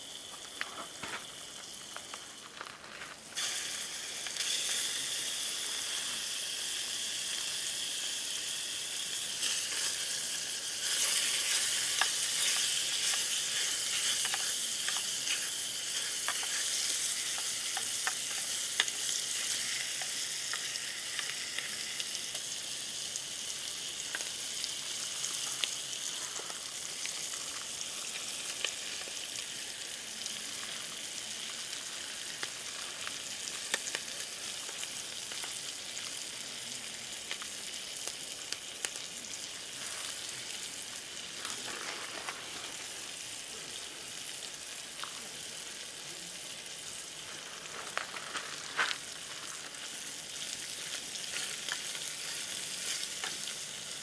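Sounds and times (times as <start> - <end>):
food sizzling over campfire: 0.0 - 54.0
fire crackling and popping: 0.3 - 6.2, 8.8 - 54.0.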